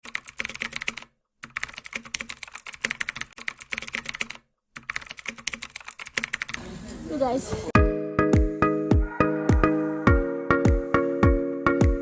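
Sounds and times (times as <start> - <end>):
fast typing on keyboard: 0.0 - 6.6.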